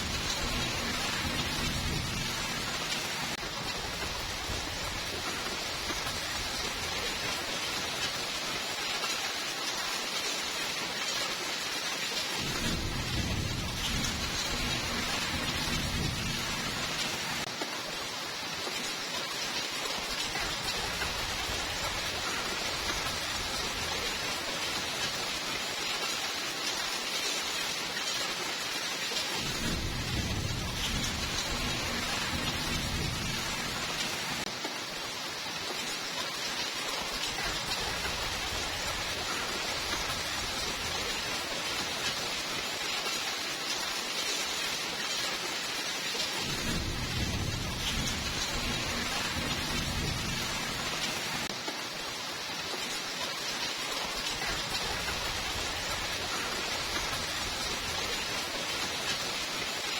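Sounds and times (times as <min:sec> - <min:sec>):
low rumble of thunder: 0:00.0 - 0:07.4, 0:12.4 - 0:17.5, 0:29.4 - 0:34.4, 0:46.4 - 0:51.5
steady rain falling: 0:00.0 - 0:59.9.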